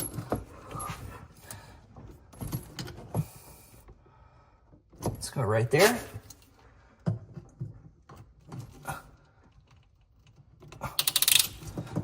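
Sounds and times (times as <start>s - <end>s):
metal wrench clicking on nut: 10.8s - 11.7s.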